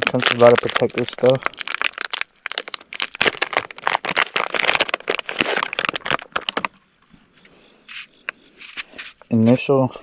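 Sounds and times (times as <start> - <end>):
plastic packaging crinkling: 0.0 - 6.9.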